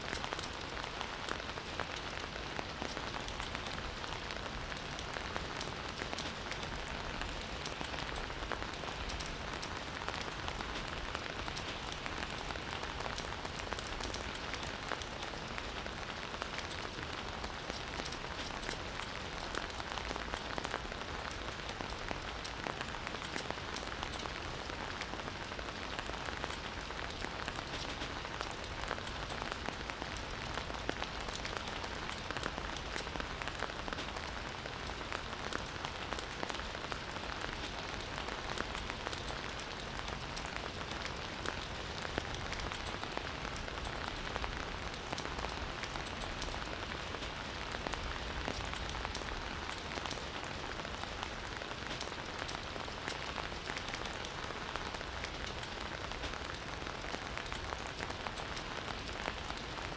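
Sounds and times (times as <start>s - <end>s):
campfire crackling: 0.0s - 59.9s.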